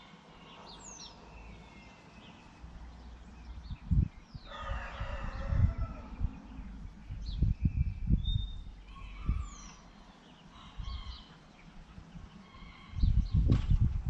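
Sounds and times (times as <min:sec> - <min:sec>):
birds whistling and calling: 0:00.0 - 0:14.0
outdoor background noise: 0:00.0 - 0:14.0
dull low thumps: 0:05.3 - 0:08.8, 0:13.0 - 0:14.0.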